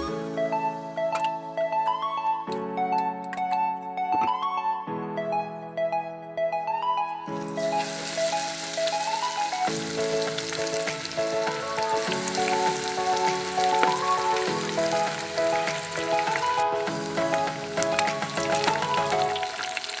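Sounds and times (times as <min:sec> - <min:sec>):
background music: 0:00.0 - 0:20.0
chicken sizzling in hot oil: 0:07.4 - 0:20.0.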